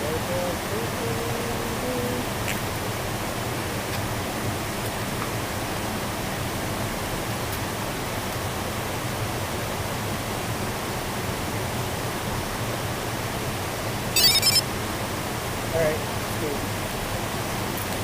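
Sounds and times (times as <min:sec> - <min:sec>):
short high-pitched chirp: 0:14.2 - 0:14.6.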